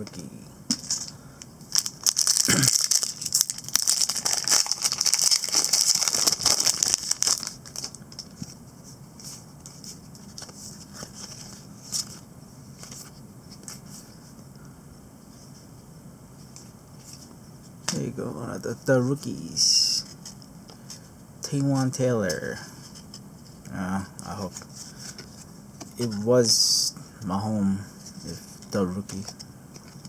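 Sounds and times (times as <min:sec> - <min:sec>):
plastic wrapping crinkling: 0:01.7 - 0:08.6.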